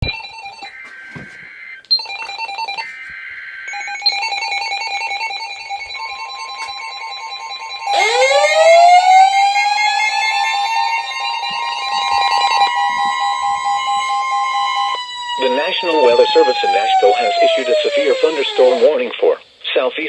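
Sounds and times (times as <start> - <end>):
electronic tones: 0.0 - 19.1
raspy data bursts: 0.0 - 19.7
steady alert tone: 2.0 - 19.0
upward sweeping tone: 7.8 - 19.0.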